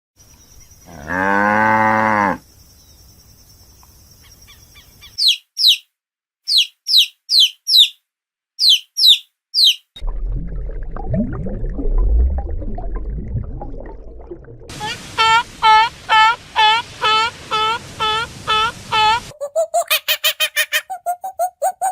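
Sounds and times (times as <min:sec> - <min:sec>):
cow mooing: 0:00.9 - 0:02.4
high downward-sweeping chirps: 0:05.2 - 0:05.8, 0:06.5 - 0:08.0, 0:08.6 - 0:10.0.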